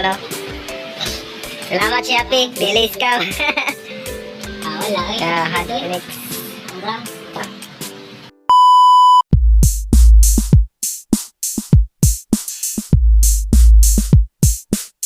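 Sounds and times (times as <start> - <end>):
loud electronic beep: 8.5 - 9.2
hip-hop drum-machine beat: 9.3 - 15.0.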